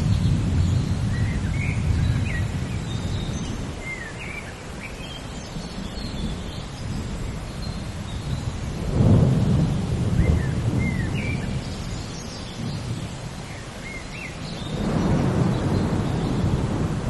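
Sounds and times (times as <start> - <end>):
thunder rumbling: 0.0 - 3.8, 8.2 - 11.9, 14.6 - 17.0
steady rain: 0.0 - 17.0.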